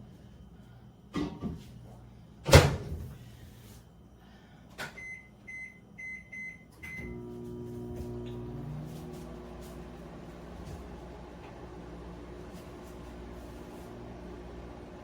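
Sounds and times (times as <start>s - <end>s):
microwave humming: 5.0s - 15.0s.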